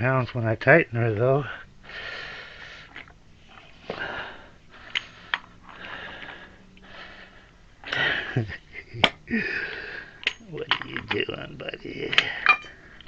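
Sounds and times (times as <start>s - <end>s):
man breathing hard through nose: 1.6s - 8.5s, 9.3s - 10.3s, 12.2s - 13.0s.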